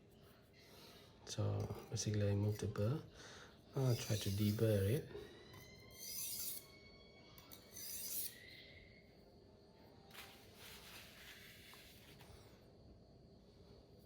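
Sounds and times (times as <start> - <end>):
knife scraping on whetstone: 3.8 - 4.8, 5.9 - 6.7, 7.7 - 8.4.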